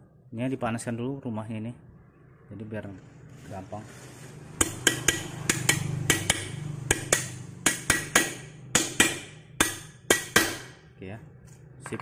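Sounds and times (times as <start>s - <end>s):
hammer tapping on metal: 4.6s - 10.8s.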